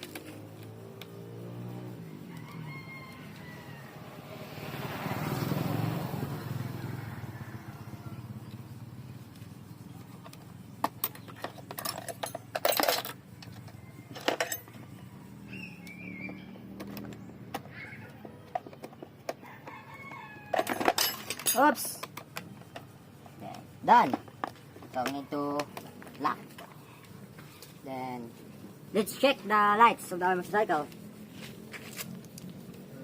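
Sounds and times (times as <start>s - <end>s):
rooster crowing: 1.9s - 4.7s, 6.3s - 8.6s, 19.4s - 21.0s
sharp clicks and rattles: 8.4s - 15.2s, 15.8s - 19.8s, 20.5s - 27.7s.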